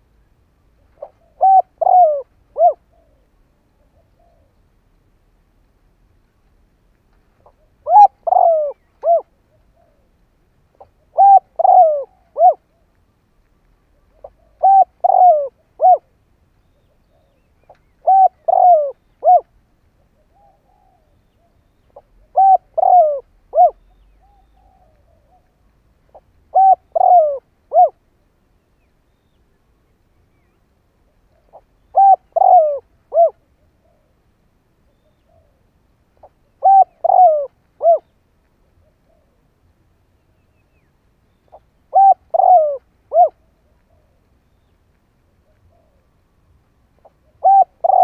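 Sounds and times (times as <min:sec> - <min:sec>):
dove cooing: 0:00.8 - 0:04.7, 0:07.4 - 0:10.2, 0:10.8 - 0:12.9, 0:13.9 - 0:28.0, 0:31.1 - 0:34.2, 0:34.8 - 0:38.1, 0:41.4 - 0:44.2, 0:45.4 - 0:46.2, 0:47.0 - 0:48.0.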